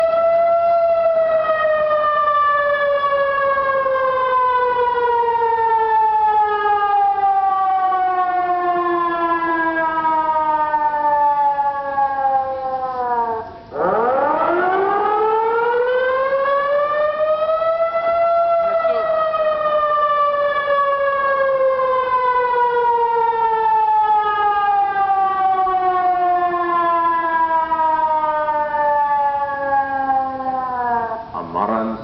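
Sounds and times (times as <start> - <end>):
warning siren wailing: 0.0 - 32.0.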